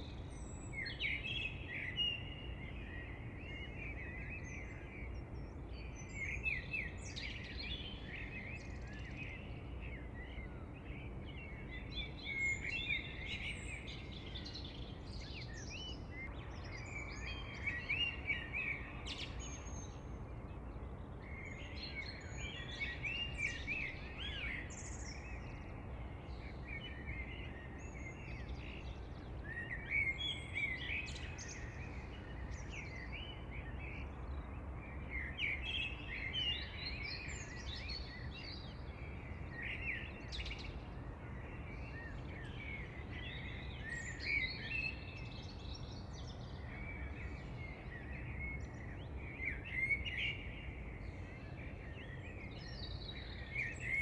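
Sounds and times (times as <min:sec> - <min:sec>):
birds chirping and singing: 0:21.2 - 0:54.0.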